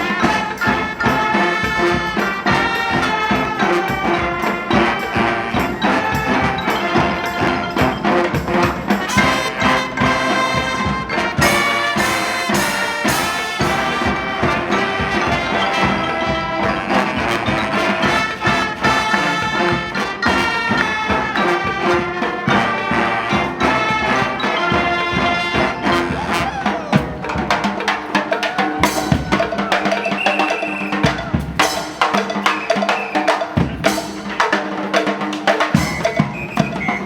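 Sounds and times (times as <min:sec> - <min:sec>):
brass band playing: 0:00.0 - 0:37.0
steady drum beat: 0:00.0 - 0:37.0.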